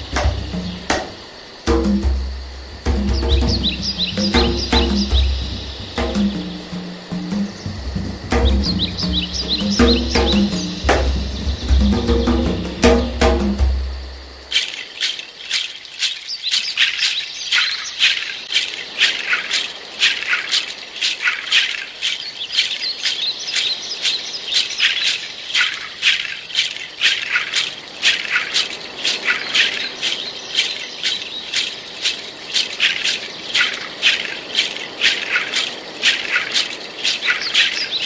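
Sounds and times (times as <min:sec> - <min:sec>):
dry shaker-like rattling: 0:00.0 - 0:16.2.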